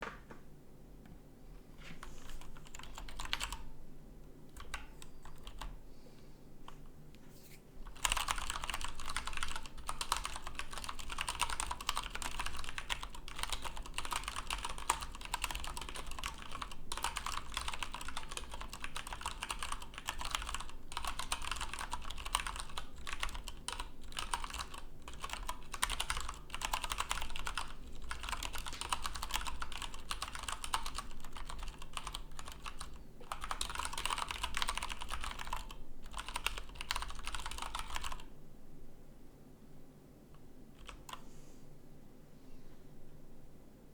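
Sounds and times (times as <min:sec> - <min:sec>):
mechanical keyboard typing: 0:02.3 - 0:03.7, 0:04.5 - 0:05.7, 0:07.9 - 0:38.3, 0:40.8 - 0:41.2.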